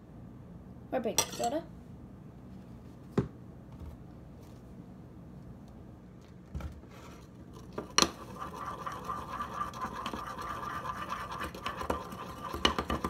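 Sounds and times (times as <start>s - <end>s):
utensil scraping slime in bowl: 7.0s - 13.0s.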